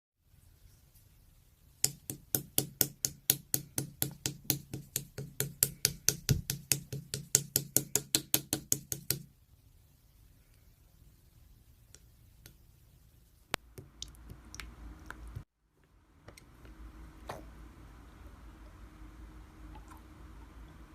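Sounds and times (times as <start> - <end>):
fast sharp knocks: 1.8 - 9.3.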